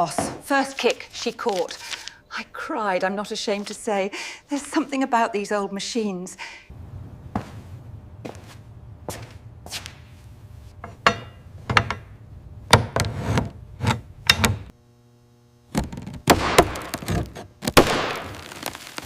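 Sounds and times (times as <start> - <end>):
faint hum: 1.0 - 17.8.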